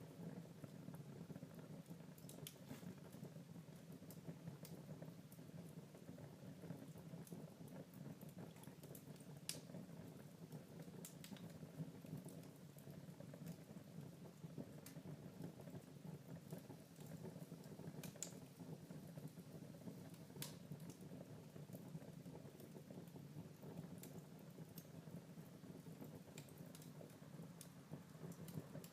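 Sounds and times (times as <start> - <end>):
wood fire crackling: 0.0 - 28.9
sharp fire pops: 20.4 - 21.0.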